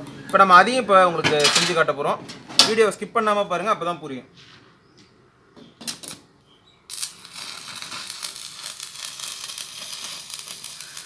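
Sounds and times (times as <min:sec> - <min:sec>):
welding arc crackling sizzle: 0:06.9 - 0:11.0.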